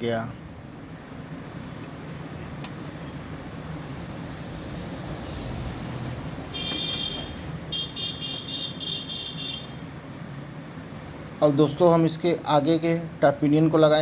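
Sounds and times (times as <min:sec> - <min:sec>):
low traffic noise: 0:00.0 - 0:14.0
vehicle horn beeping: 0:06.5 - 0:09.9.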